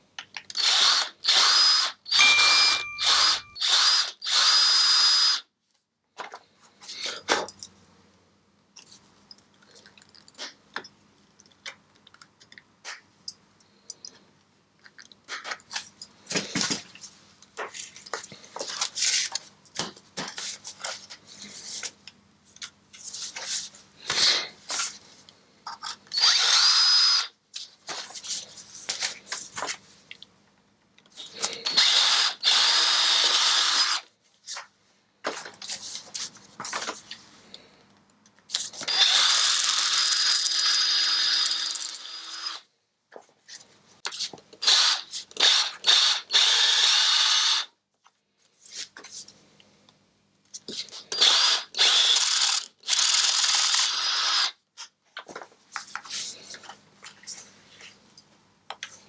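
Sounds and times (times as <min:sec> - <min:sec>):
power drill whining: 0:00.5 - 0:05.5, 0:26.1 - 0:27.3, 0:31.6 - 0:34.0, 0:38.9 - 0:42.6, 0:44.6 - 0:47.7, 0:51.1 - 0:54.6.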